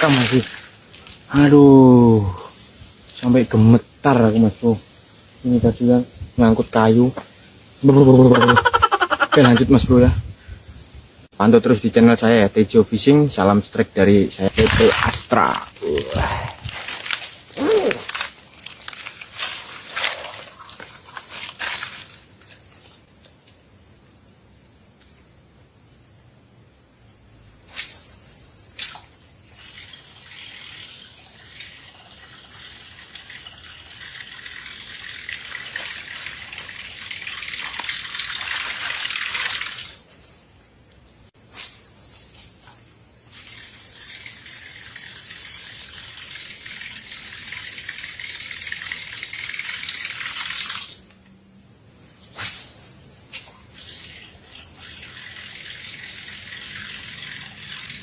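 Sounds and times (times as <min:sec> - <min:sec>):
sharp water splashes: 0:00.0 - 0:00.8.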